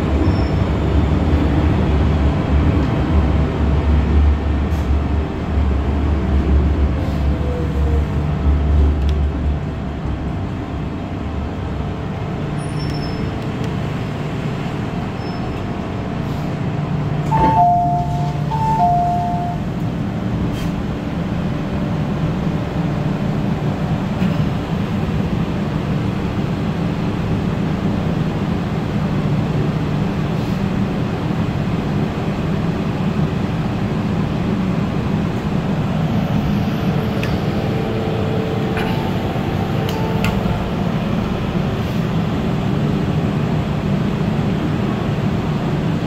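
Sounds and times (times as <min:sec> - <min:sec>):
metro train hum and rumble: 0:00.0 - 0:46.0
falling two-note electronic chime: 0:17.4 - 0:19.6
click: 0:37.2 - 0:37.4, 0:39.9 - 0:40.4.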